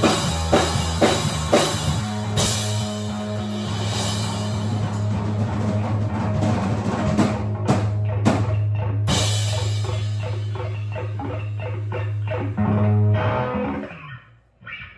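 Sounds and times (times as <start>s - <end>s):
rock music: 0.0s - 14.9s.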